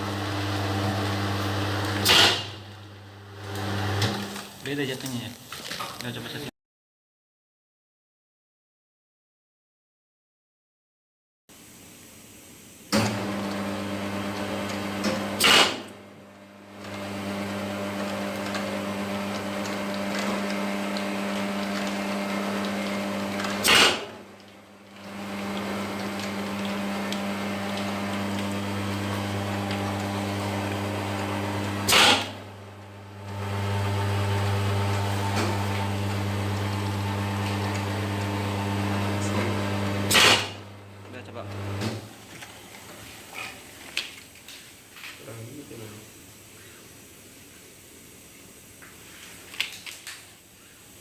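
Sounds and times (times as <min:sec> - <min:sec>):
machine humming: 0:00.0 - 0:04.4, 0:13.0 - 0:42.1
machine stopping with loud click: 0:01.8 - 0:02.6, 0:14.6 - 0:16.0, 0:22.6 - 0:24.2, 0:31.8 - 0:32.4, 0:39.0 - 0:40.7.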